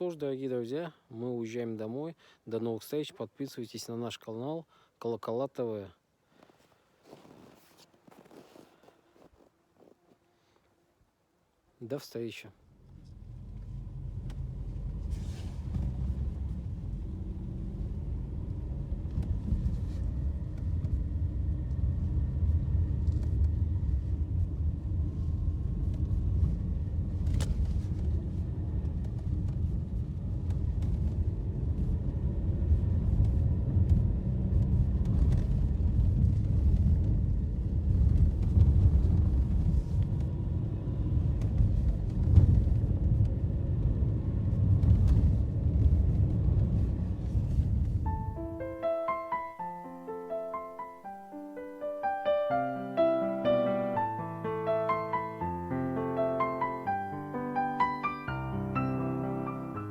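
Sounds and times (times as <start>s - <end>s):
car road and engine rumble: 12.6s - 50.0s.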